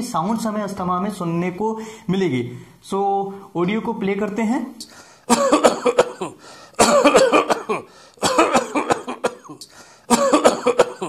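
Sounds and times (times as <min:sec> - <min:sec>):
person coughing in fits: 0:05.3 - 0:11.0.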